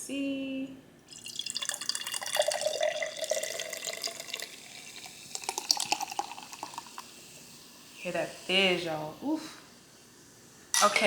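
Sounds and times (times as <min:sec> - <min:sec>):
soda pouring into a glass: 0:01.1 - 0:08.5
soda fizzing bubbles popping: 0:01.1 - 0:08.7.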